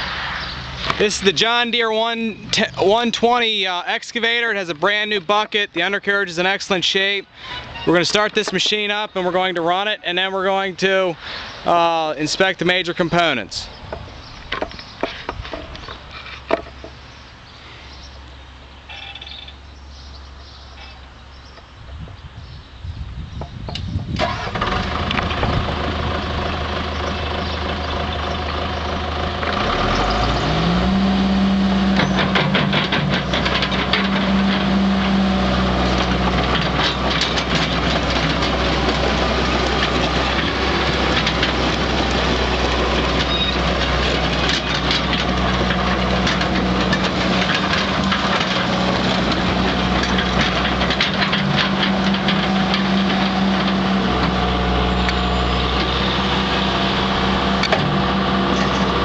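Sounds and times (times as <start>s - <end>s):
excavator diesel engine revving: 24.2s - 59.0s.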